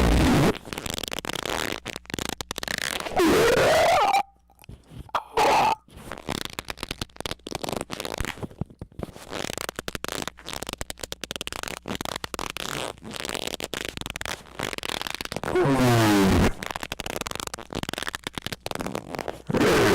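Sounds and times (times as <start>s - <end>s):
irregular crackling sputter: 0.0s - 19.9s
harsh distorted squeaking: 2.7s - 4.4s, 5.1s - 5.8s.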